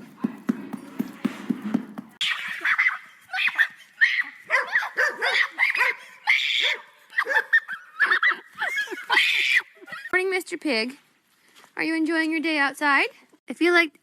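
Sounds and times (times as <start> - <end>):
dog barking and yipping: 2.2 - 8.4.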